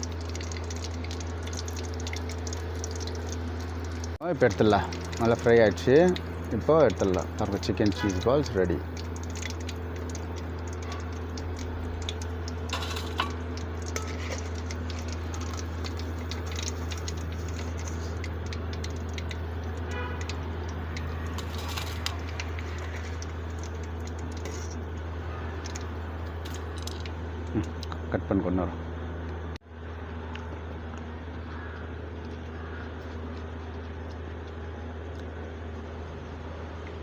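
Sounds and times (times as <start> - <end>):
hot oil crackling: 0.0 - 28.2, 29.7 - 37.0
constant low hum: 0.0 - 37.0.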